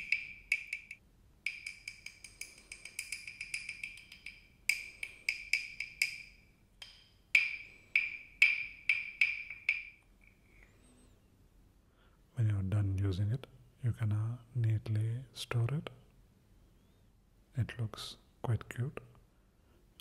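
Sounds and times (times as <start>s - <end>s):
wooden frog toy clicks: 0.0s - 10.0s.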